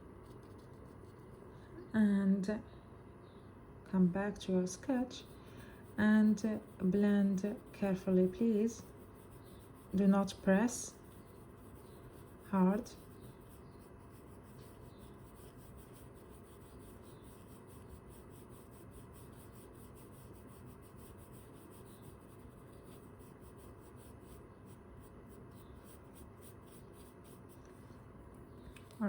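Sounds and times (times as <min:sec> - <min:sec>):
charcoal rubbing on paper: 0:05.1 - 0:27.7.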